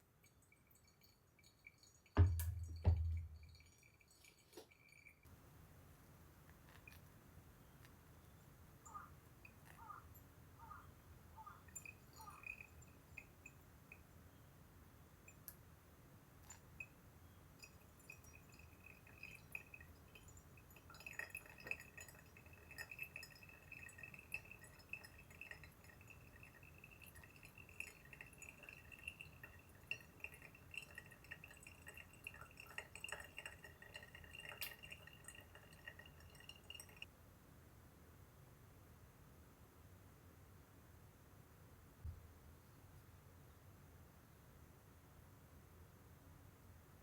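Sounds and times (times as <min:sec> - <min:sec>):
liquid pouring in a thin stream: 0:00.0 - 0:05.3, 0:11.6 - 0:13.6, 0:17.6 - 0:37.1
light clinks: 0:00.2 - 0:05.3, 0:11.4 - 0:14.0, 0:17.6 - 0:37.1.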